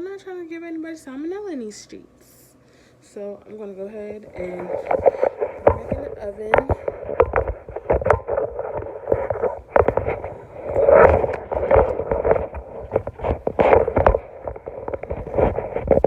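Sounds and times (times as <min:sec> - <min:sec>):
rustling: 0:04.2 - 0:16.0
knocks and clicks: 0:04.6 - 0:16.0.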